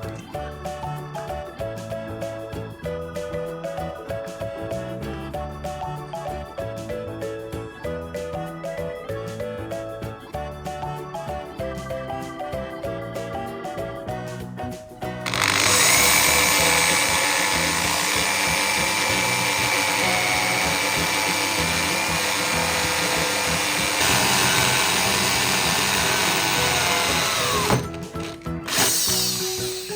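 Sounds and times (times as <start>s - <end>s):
electric drill whining: 15.3s - 29.6s.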